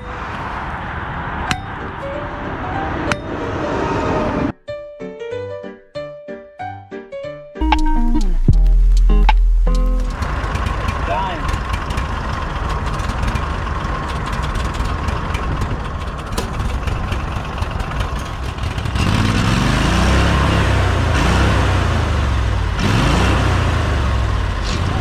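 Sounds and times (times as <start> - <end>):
engine running: 7.6 - 25.0.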